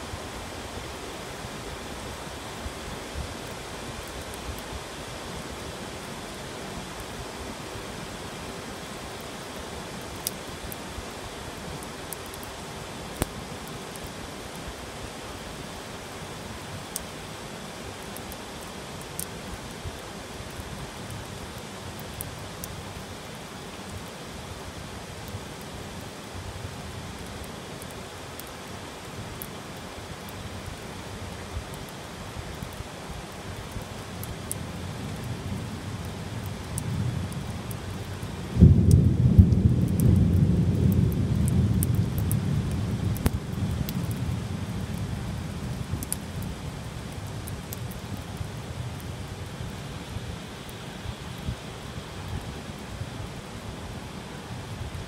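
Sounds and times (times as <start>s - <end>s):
heavy rain falling: 0.0s - 55.0s
thunder crack and rumble: 38.5s - 46.2s.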